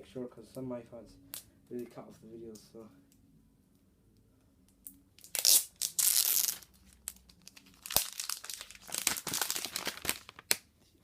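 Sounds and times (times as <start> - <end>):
plastic wrapping crinkling and tearing: 5.2 - 10.7.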